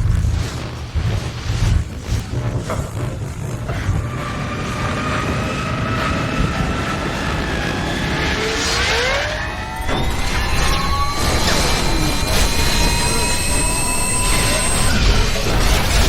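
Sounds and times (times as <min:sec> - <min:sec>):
low sci-fi rumble: 0:00.0 - 0:16.0
steady whining tones: 0:00.0 - 0:16.0
rising pitch glides: 0:03.6 - 0:16.0
whooshing swell: 0:03.8 - 0:16.0.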